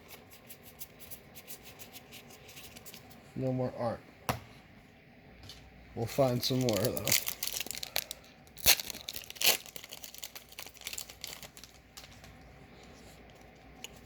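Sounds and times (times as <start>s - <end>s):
foil wrapper crackling: 6.1s - 12.4s.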